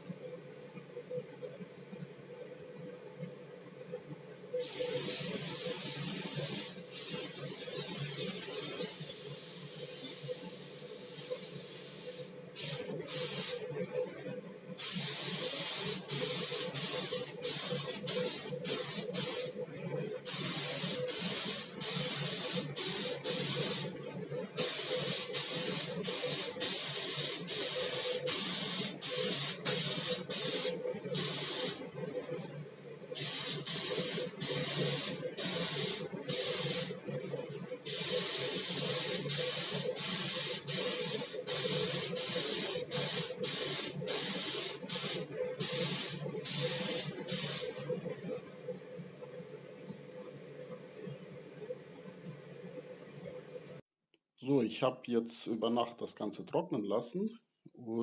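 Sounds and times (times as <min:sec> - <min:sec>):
spray gun compressed air hiss: 0:04.6 - 0:13.7, 0:14.8 - 0:19.6, 0:20.2 - 0:24.0, 0:24.6 - 0:31.8, 0:33.2 - 0:37.0, 0:37.8 - 0:47.9.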